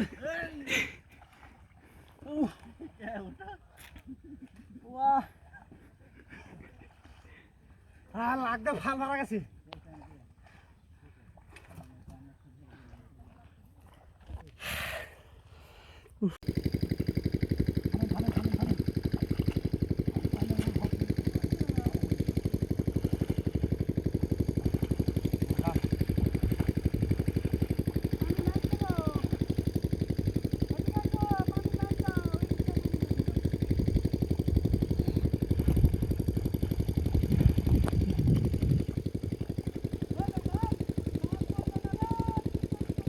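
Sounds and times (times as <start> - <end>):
small engine chugging: 16.4 - 43.0.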